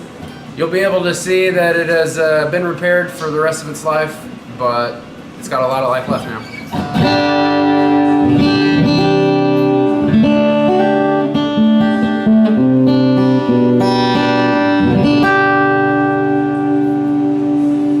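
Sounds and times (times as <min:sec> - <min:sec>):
guitar chords and notes: 0:06.7 - 0:18.0.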